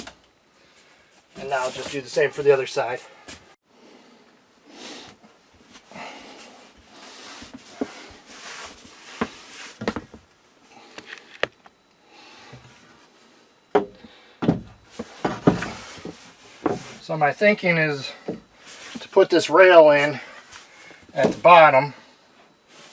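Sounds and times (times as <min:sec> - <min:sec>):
wooden lumber knocks and thumps: 0:09.2 - 0:10.2, 0:13.7 - 0:16.9.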